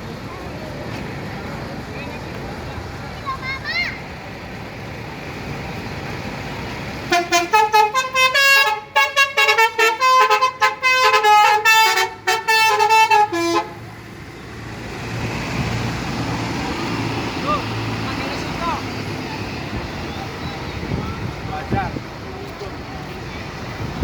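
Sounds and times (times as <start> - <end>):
bus engine running: 0.0 - 24.0
multi-tone bus horn tune: 7.0 - 14.0.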